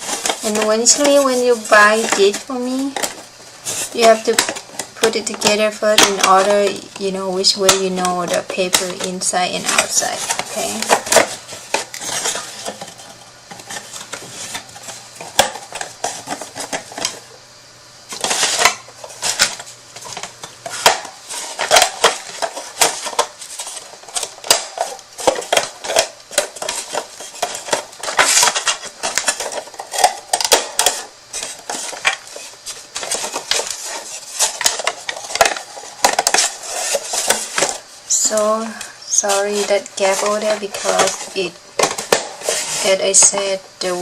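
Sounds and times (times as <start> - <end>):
wooden box and markers clattering: 39.2 - 43.5.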